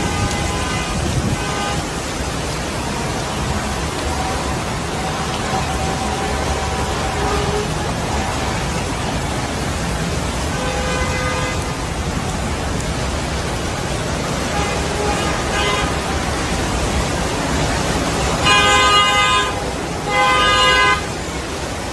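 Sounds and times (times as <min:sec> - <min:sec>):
car horns honking: 0:00.0 - 0:09.5, 0:10.4 - 0:11.8, 0:14.4 - 0:16.6, 0:17.9 - 0:21.3
heavy rain: 0:00.0 - 0:21.9
traffic: 0:00.0 - 0:21.9.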